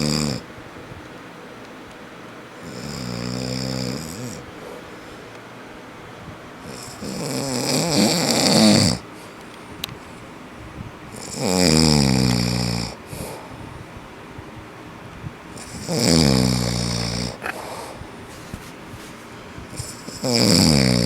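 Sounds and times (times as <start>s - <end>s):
man snoring loudly: 0.0s - 0.4s, 2.6s - 4.8s, 6.7s - 9.0s, 11.2s - 13.3s, 15.6s - 18.0s, 19.8s - 21.0s.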